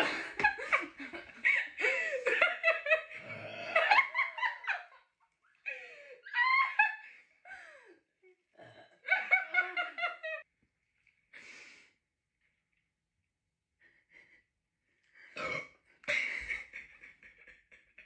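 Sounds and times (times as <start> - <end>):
people laughing: 0.0 - 5.1, 5.7 - 7.8, 9.0 - 10.4, 16.1 - 18.0.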